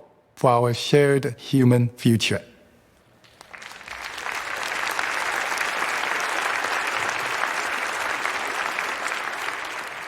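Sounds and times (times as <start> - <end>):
large audience applauding: 3.2 - 10.0.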